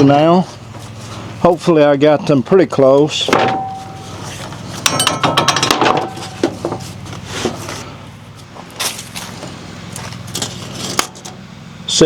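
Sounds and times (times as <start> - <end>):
small engine idling: 0.5 - 12.0
boards and tools knocking: 4.8 - 6.9.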